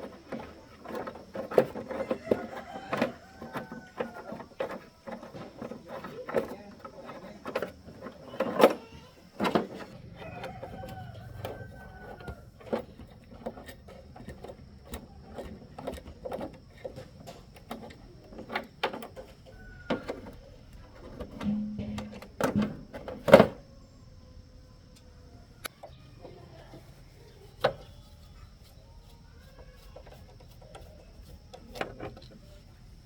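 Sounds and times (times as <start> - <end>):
metallic clicks and knocks: 0.0 - 23.6
rooster crowing: 1.5 - 6.1, 9.8 - 13.2, 19.4 - 21.9.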